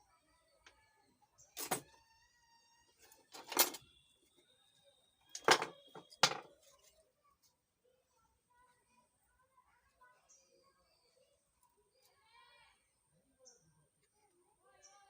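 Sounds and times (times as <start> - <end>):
tools knocking and clattering: 3.3 - 3.8, 5.3 - 6.5.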